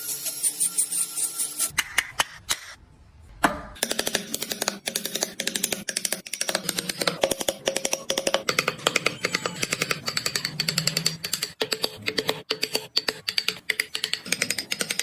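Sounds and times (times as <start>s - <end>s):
clicking tapping strokes: 3.8s - 15.0s.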